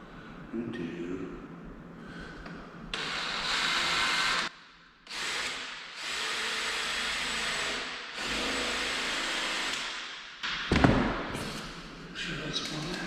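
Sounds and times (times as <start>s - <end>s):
power drill boring through door: 2.9s - 4.5s, 5.1s - 9.9s.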